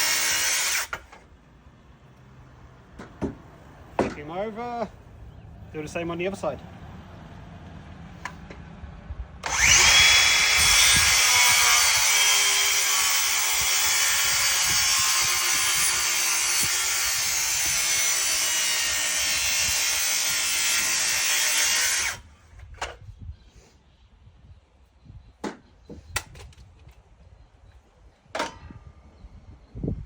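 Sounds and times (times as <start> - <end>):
circular saw cutting wood: 0.0 - 1.2, 9.4 - 22.3.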